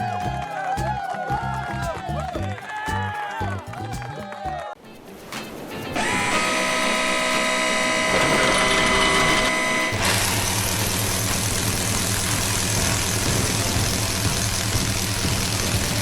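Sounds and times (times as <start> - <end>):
mechanical whine: 5.5 - 16.0
diesel engine running: 6.0 - 16.0.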